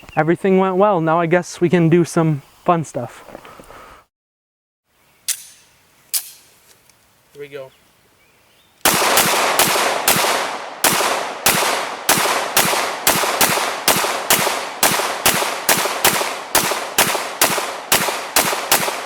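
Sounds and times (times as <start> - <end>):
pistol shots: 8.9 - 19.0.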